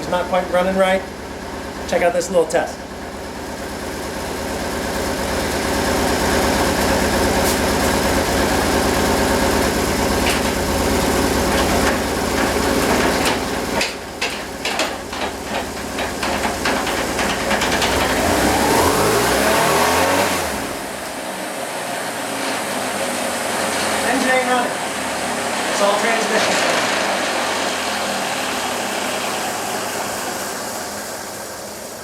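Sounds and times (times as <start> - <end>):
motorcycle transmission grinding: 0.0 - 21.2, 22.2 - 32.0
knocking and clicking: 11.5 - 18.4
rising whine: 18.2 - 32.0.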